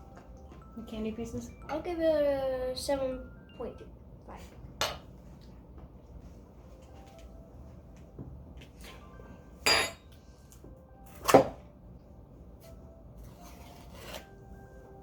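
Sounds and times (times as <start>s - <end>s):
tableware clattering: 9.7s - 10.1s.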